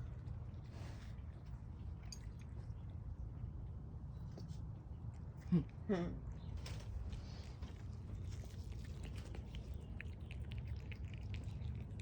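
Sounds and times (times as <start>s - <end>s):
low background rumble: 0.0s - 12.0s
cat chewing crunchy leaves: 6.3s - 12.0s.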